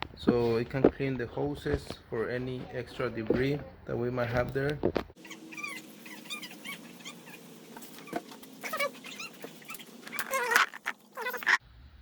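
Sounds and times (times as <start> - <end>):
animal whining cries: 5.2 - 11.6.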